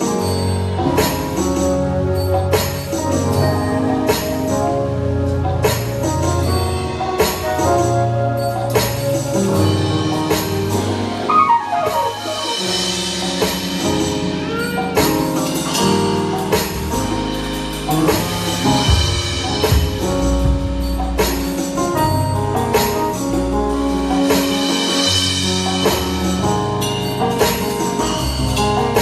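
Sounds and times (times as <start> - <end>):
gospel band playing: 0.0 - 29.0
falling pitch glide: 7.6 - 13.4.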